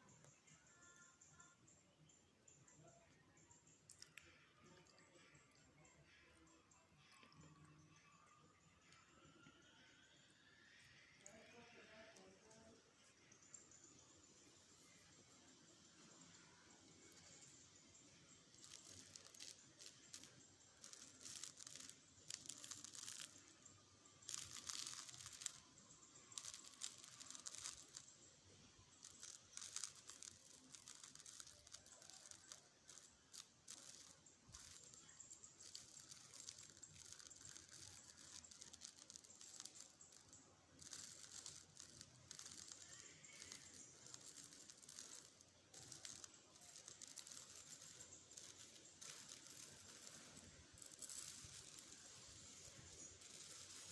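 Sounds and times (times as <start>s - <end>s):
faint rustling and crinkling: 11.0s - 53.9s.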